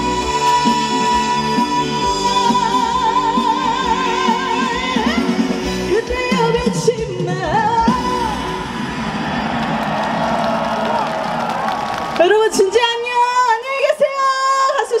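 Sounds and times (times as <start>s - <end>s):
woman singing with vibrato: 0.0s - 8.6s, 12.2s - 15.0s
band backing track: 0.0s - 12.9s.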